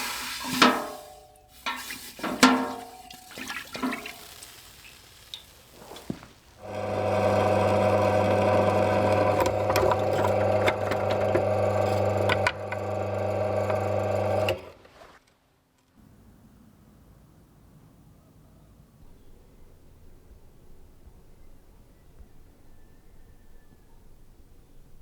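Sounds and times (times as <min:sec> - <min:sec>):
electric machine humming: 0:06.6 - 0:14.6.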